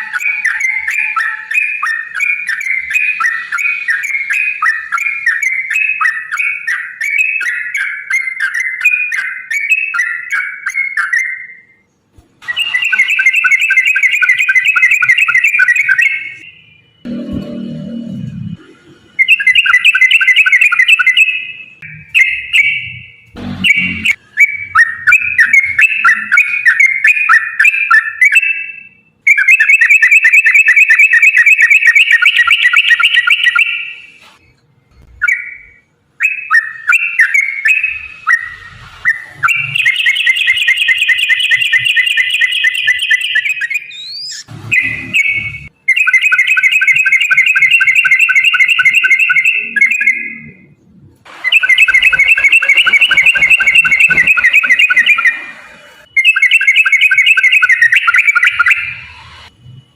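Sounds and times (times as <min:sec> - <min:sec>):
bird chattering song: 0:00.0 - 0:11.6, 0:51.5 - 0:55.5.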